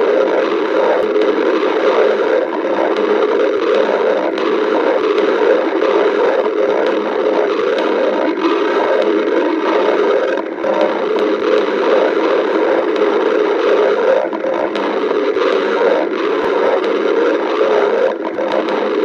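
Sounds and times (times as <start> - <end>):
stomach growling: 0.0 - 19.0.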